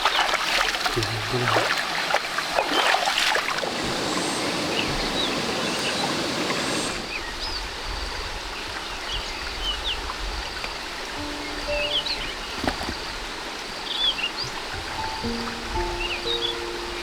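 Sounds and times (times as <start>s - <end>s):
stream water rushing: 0.0s - 7.2s, 10.8s - 17.0s
faint bird chirps: 11.2s - 13.1s, 13.9s - 17.0s.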